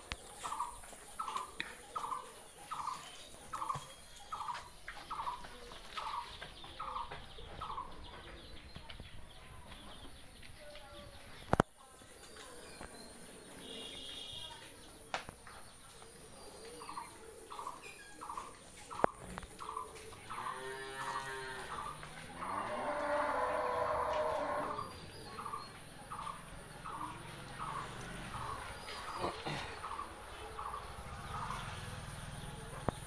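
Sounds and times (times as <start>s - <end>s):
cow mooing: 20.4s - 24.8s.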